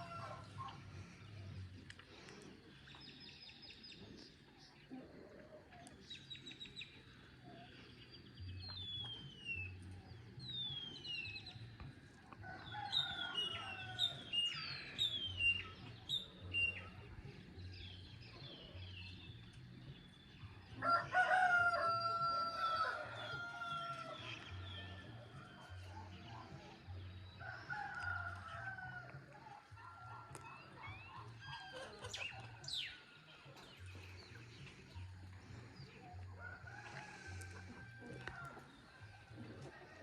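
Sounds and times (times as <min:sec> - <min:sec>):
rooster crowing: 0:00.0 - 0:00.6, 0:12.4 - 0:14.1, 0:20.8 - 0:24.2
songbirds singing: 0:00.0 - 0:40.0.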